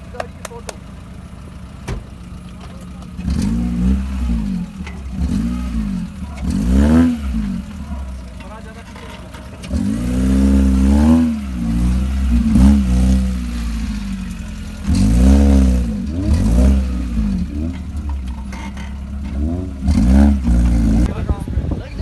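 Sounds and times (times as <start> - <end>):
car engine revving hard: 3.1 - 8.4, 9.5 - 21.4.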